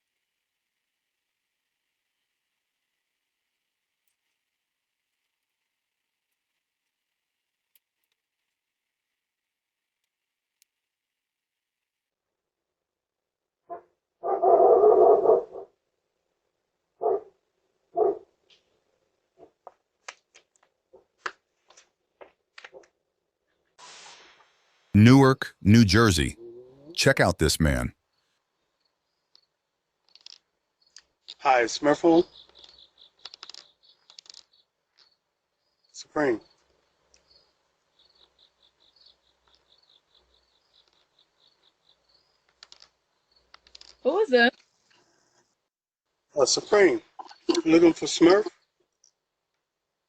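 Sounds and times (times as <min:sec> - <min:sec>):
dog barking: 0:13.7 - 0:15.7, 0:17.0 - 0:17.3, 0:18.0 - 0:18.3
faint irregular clicks: 0:29.3 - 0:31.4, 0:32.4 - 0:35.2, 0:36.6 - 0:37.4, 0:39.4 - 0:41.8, 0:42.4 - 0:45.6, 0:48.8 - 0:49.7.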